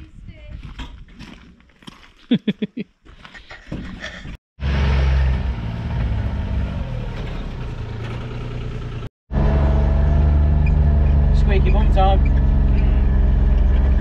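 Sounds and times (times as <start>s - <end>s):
vehicle engine running low: 4.6s - 14.0s.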